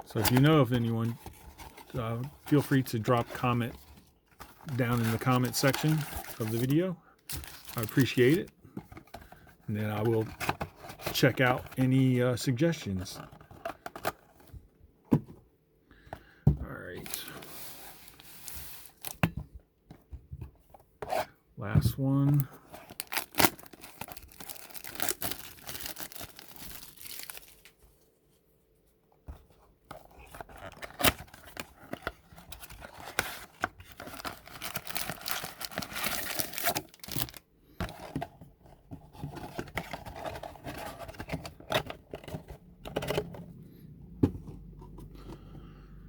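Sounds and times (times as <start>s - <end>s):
shrink wrap crinkling: 22.9s - 27.7s, 33.9s - 37.4s
cardboard box handled: 29.4s - 43.5s.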